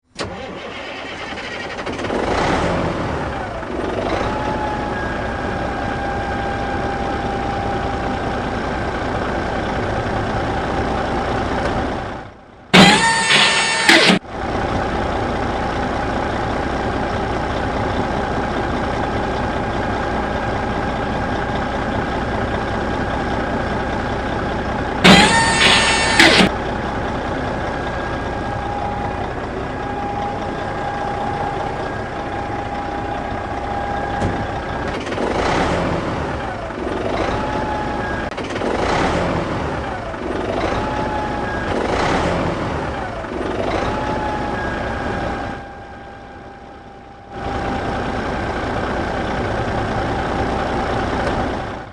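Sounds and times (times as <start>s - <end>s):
tractor engine running: 0.0s - 51.9s
loud brief blaring: 12.8s - 14.2s, 25.0s - 26.5s.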